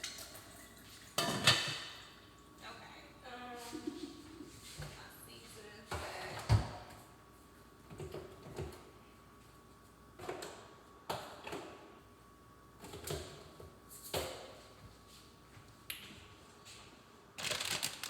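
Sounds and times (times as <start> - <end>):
faint steady hum: 0.0 - 18.0
kitchen utensils knocking and clattering: 1.2 - 1.9.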